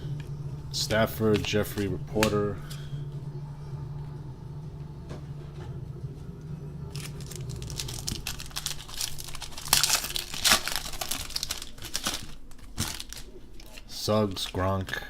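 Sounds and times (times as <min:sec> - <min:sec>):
plastic wrapper tearing and crinkling: 0:06.9 - 0:15.0.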